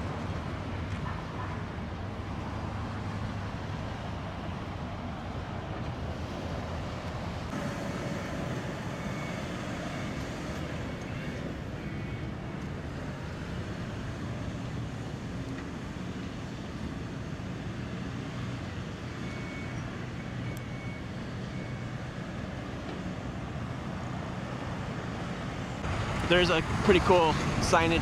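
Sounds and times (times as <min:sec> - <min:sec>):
road traffic rumble: 0:00.0 - 0:28.0.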